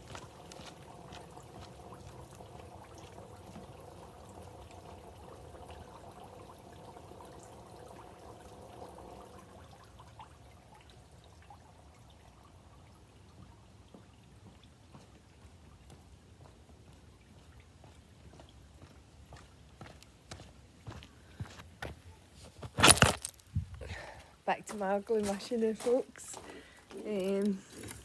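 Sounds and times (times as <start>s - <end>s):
water pouring and trickling: 0.0s - 19.7s, 22.6s - 28.0s.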